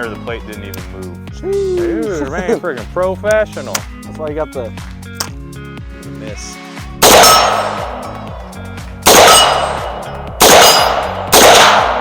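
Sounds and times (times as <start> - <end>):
echoing gunshots: 7.0 - 8.1, 9.0 - 12.0
metallic ring of steel target: 7.0 - 12.0.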